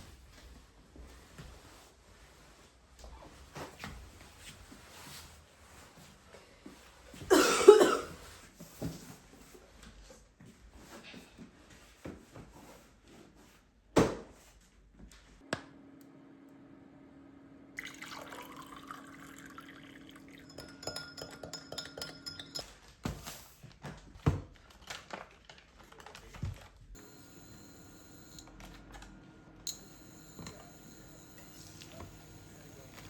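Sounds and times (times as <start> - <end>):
liquid running into a cup: 17.8 - 22.6, 29.7 - 33.0
glass or dishes clinking: 20.4 - 22.7
electric hum: 27.0 - 33.0.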